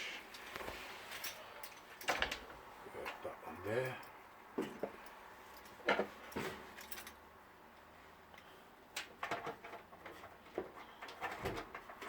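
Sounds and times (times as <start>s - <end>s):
knocks and clinks of parts: 1.1s - 3.2s, 3.8s - 7.2s, 8.4s - 12.0s.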